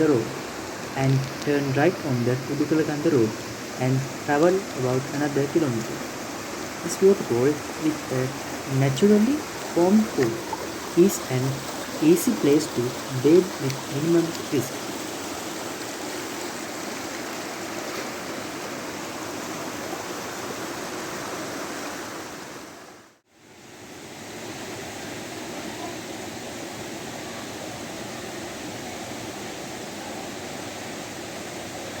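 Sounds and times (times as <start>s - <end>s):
waterfall rushing: 0.0s - 23.0s.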